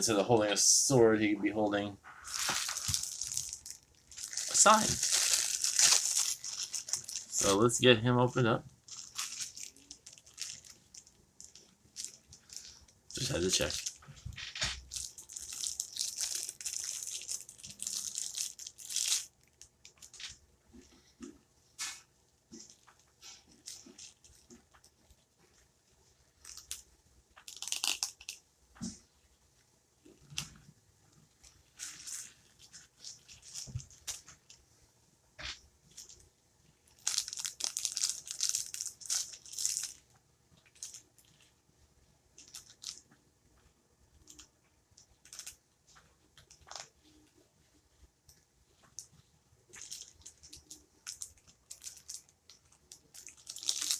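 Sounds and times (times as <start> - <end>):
plastic packaging crinkling: 2.2 - 7.6, 8.8 - 20.4, 27.4 - 28.4, 31.4 - 34.6, 35.4 - 36.2, 36.8 - 40.1, 40.7 - 41.5, 42.4 - 43.1, 45.1 - 45.6, 46.4 - 47.2, 49.7 - 53.9.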